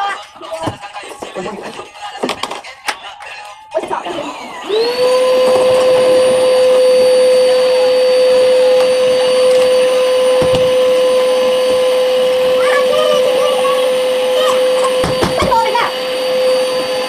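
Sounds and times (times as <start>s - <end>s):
vacuum cleaner running: 3.8s - 17.0s
knocks: 10.4s - 10.8s.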